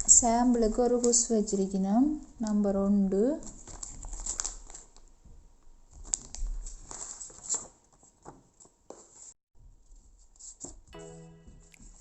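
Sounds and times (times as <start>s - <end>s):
packaging rustling: 3.5s - 5.1s, 5.9s - 9.3s.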